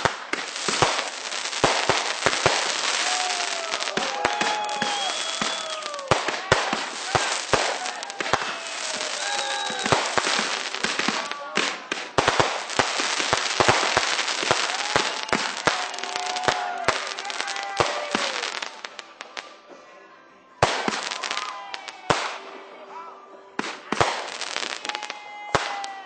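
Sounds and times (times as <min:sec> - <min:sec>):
firework bangs: 0:00.0 - 0:19.5, 0:20.6 - 0:22.5, 0:23.6 - 0:26.0
firework crackling: 0:00.0 - 0:19.6, 0:20.6 - 0:22.5, 0:23.6 - 0:26.0
rising and falling whistling tones: 0:03.4 - 0:06.1.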